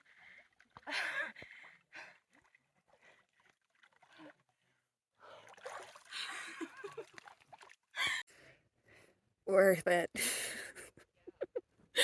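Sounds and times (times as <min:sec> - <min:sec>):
water splashing and sloshing: 0:00.0 - 0:08.2.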